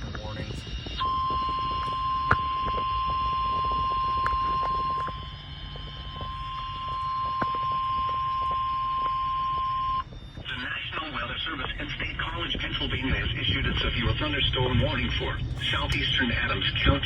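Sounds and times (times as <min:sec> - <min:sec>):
steady electronic alert tone: 0:00.0 - 0:10.1.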